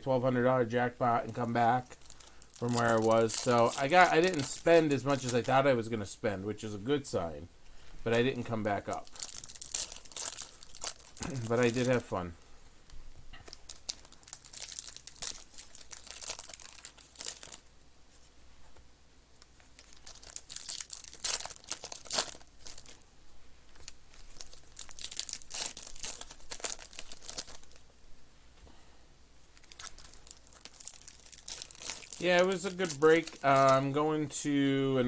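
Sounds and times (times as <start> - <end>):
plastic wrapper tearing and crinkling: 1.2 - 5.7, 8.1 - 12.2, 13.4 - 17.6, 19.5 - 23.0, 23.7 - 27.9, 29.5 - 34.0.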